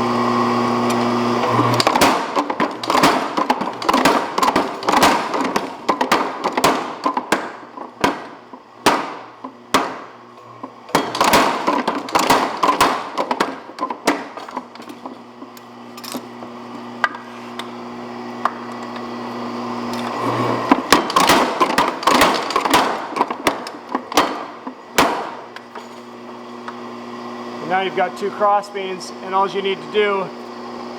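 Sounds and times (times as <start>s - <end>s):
electric motor humming: 0.0s - 30.9s
power hammer striking hot steel: 0.9s - 15.7s, 19.9s - 26.1s.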